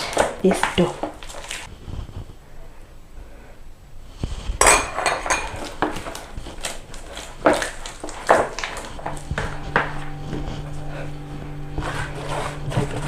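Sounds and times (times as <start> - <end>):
low handling sounds: 4.0 - 13.0
utensil scraping mixing bowl: 4.4 - 13.0.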